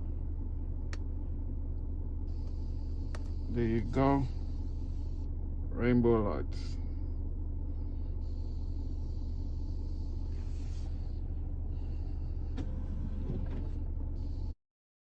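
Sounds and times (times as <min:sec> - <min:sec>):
car idling from inside: 0:00.0 - 0:14.6
faint clicks: 0:02.4 - 0:03.4.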